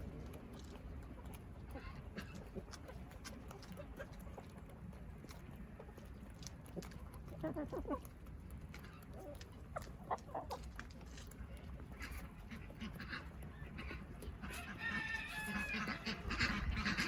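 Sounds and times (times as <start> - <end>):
chickens clucking: 0.0 - 17.0
steady low rumble: 15.7 - 17.0.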